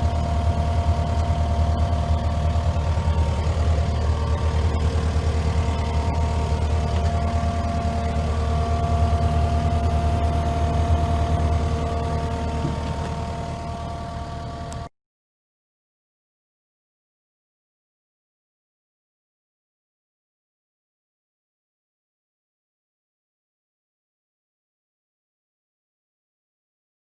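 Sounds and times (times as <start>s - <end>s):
diesel engine running: 0.0s - 14.9s
thin steady whine: 0.0s - 14.9s.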